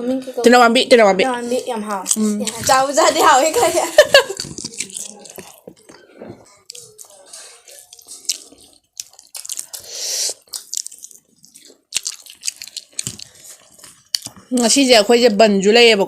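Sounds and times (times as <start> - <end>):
wet chewing sounds: 2.0 - 14.8.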